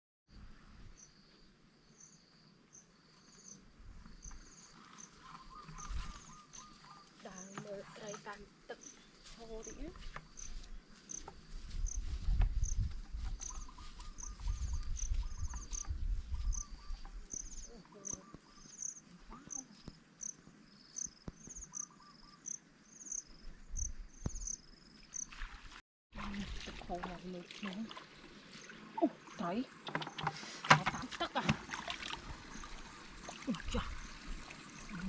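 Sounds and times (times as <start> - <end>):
insect chirping: 0.9 - 25.6.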